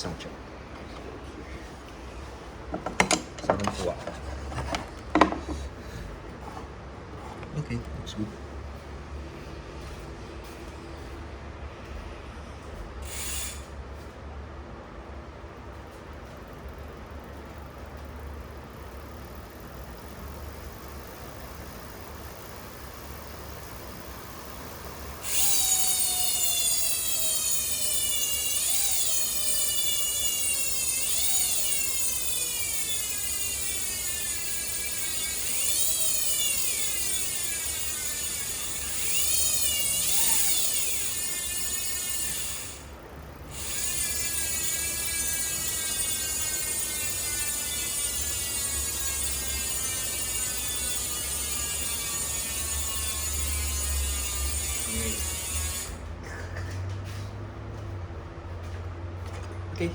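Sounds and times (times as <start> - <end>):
bicycle hub freewheeling ratchet buzz: 12.7 - 14.2, 15.6 - 56.2.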